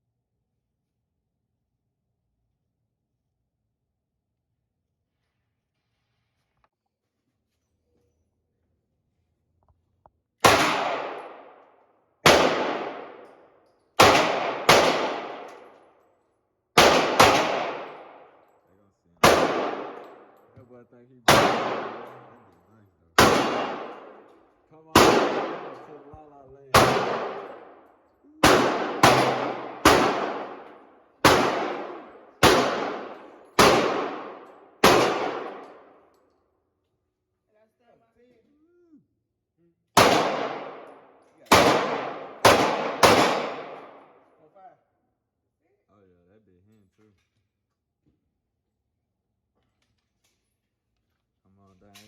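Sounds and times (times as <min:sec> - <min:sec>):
gunshots with ringing echo: 0:10.4 - 0:16.0, 0:16.8 - 0:18.5, 0:19.2 - 0:20.6, 0:21.2 - 0:22.6, 0:23.2 - 0:36.1, 0:40.0 - 0:44.3.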